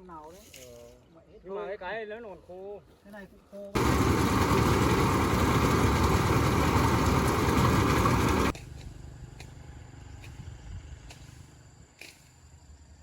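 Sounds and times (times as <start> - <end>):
small engine running loudly: 3.8 - 8.6.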